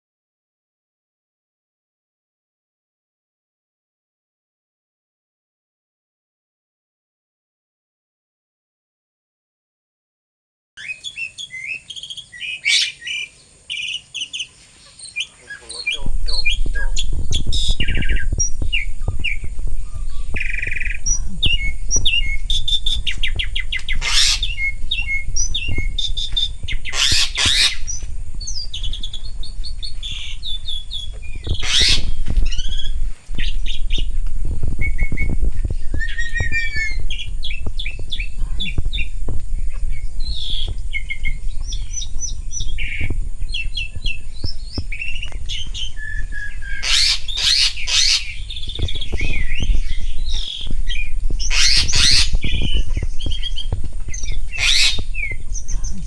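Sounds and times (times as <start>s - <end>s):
starlings chirping and trilling: 10.8s - 56.0s
low rumble: 15.9s - 56.0s
harsh bird squawks: 23.9s - 24.8s, 26.9s - 28.0s, 31.6s - 32.9s, 46.6s - 48.4s, 51.4s - 52.5s, 54.6s - 55.1s.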